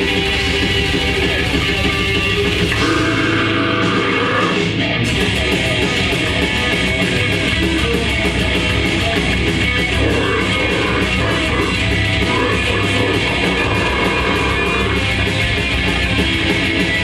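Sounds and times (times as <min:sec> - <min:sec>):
bass: 0:00.0 - 0:17.0
distorted electric guitars: 0:00.0 - 0:17.0
drums: 0:00.0 - 0:17.0.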